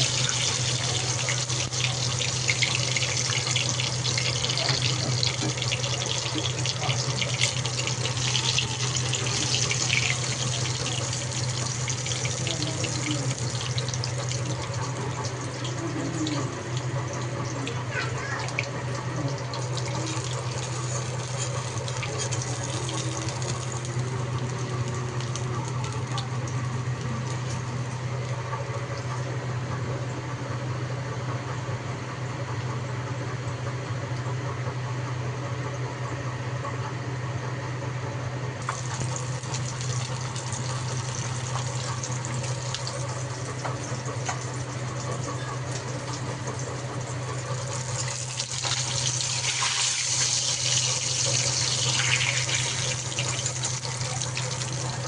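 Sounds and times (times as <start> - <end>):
small motor humming: 0.0 - 28.4.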